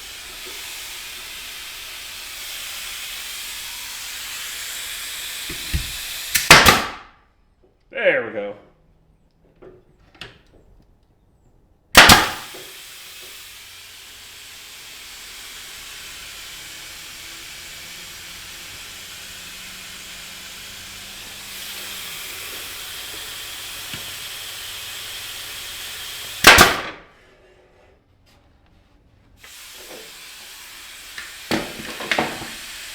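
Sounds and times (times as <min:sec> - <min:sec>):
compressed air hissing: 0:00.0 - 0:07.0, 0:12.0 - 0:26.9, 0:29.4 - 0:32.9
sharp pneumatic bangs: 0:00.0 - 0:07.2, 0:11.9 - 0:27.2, 0:29.4 - 0:32.9.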